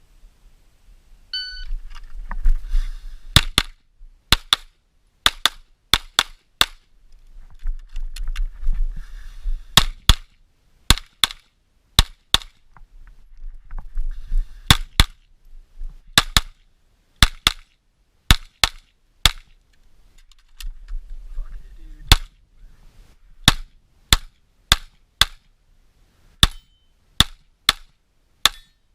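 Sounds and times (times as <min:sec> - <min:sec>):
shot timer beep: 0:01.3 - 0:01.7
movement noise: 0:01.4 - 0:03.4, 0:07.1 - 0:09.8, 0:12.6 - 0:14.7.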